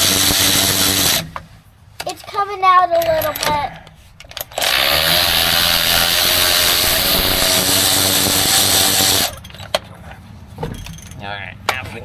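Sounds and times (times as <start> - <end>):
cordless power tool running: 0.0 - 1.5, 4.3 - 9.6.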